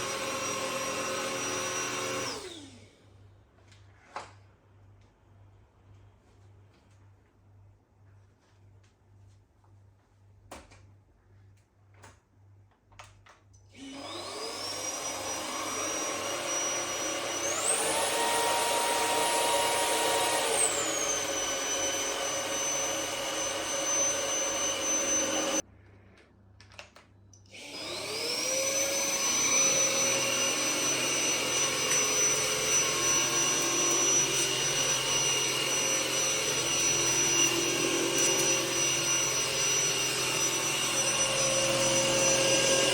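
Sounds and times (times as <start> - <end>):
vacuum motor whining: 0.0 - 2.8, 13.8 - 25.6, 27.6 - 42.9.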